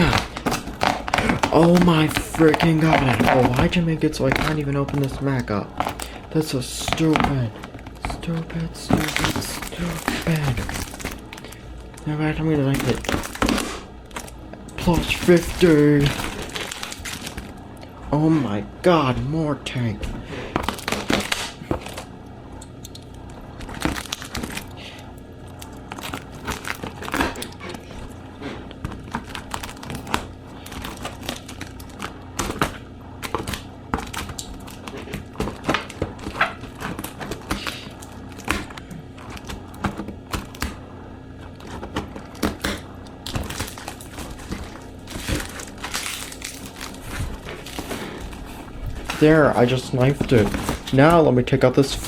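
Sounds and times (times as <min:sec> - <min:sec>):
knife cutting packing tape: 0:00.0 - 0:11.6.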